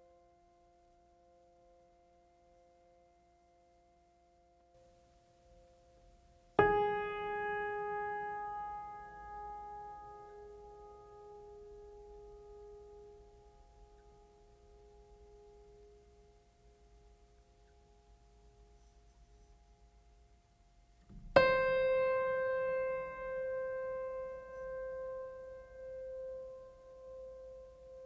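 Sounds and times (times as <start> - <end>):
piano note ringing: 6.6 - 15.9, 21.1 - 28.0.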